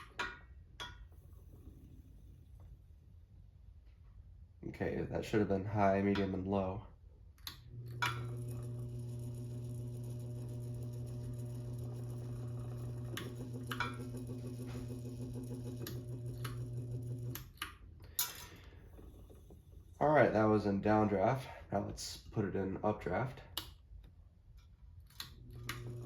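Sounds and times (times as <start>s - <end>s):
ceiling fan motor humming: 7.6s - 17.6s.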